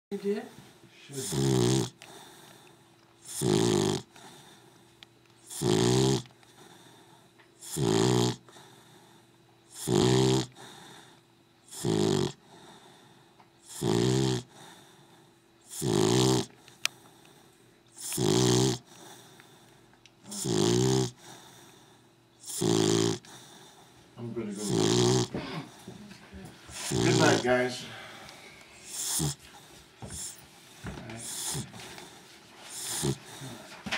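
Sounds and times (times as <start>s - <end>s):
dog snoring: 0.4s - 26.0s, 26.7s - 33.9s.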